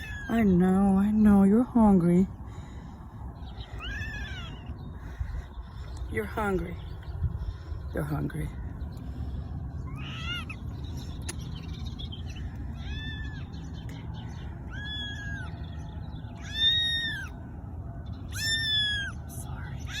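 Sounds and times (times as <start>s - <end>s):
kittens meowing: 0.0s - 0.4s, 3.6s - 4.8s, 9.8s - 10.7s, 12.5s - 13.6s, 14.6s - 17.4s, 18.3s - 20.0s
steady low rumble: 0.0s - 20.0s.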